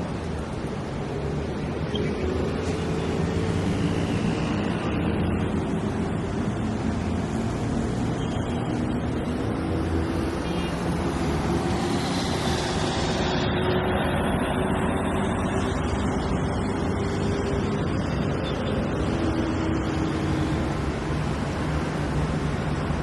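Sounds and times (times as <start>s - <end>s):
dense road traffic noise: 0.0s - 23.0s.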